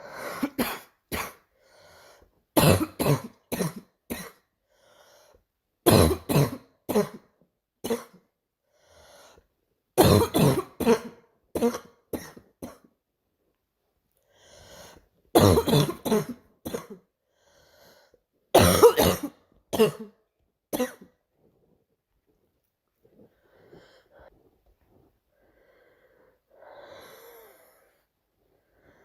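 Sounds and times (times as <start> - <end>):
quiet breaths: 1.4 - 2.6, 4.6 - 5.7, 8.6 - 9.8, 14.1 - 15.3, 17.1 - 18.5, 21.3 - 29.0
girl coughing in fits: 2.6 - 4.4, 5.9 - 8.2, 10.0 - 12.9, 15.4 - 17.0, 18.6 - 21.2.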